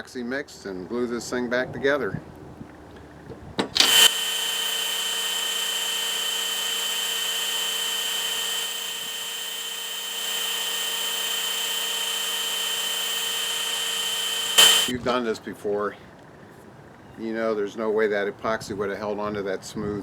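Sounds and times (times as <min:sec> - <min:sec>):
small power tool whining: 0:03.6 - 0:15.1.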